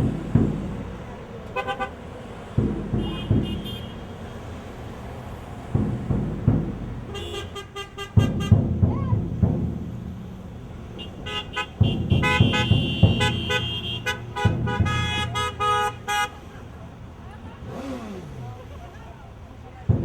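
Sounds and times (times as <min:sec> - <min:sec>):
car horns honking: 0:00.0 - 0:20.0
traffic noise: 0:00.0 - 0:20.0.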